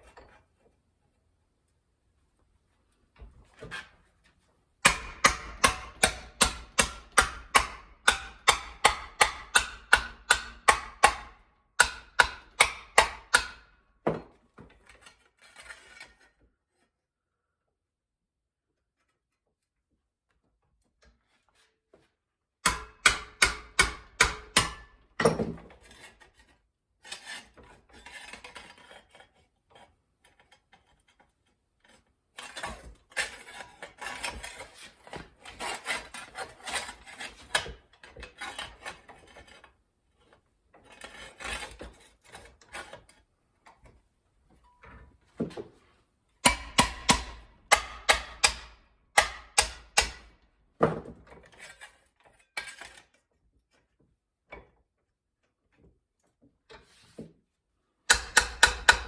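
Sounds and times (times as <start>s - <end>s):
hammer strikes on sheet metal: 4.8s - 13.7s, 22.6s - 24.9s, 46.4s - 50.3s, 58.1s - 59.0s
rasping and scraping metal: 14.8s - 17.0s, 25.8s - 43.3s, 51.4s - 53.2s.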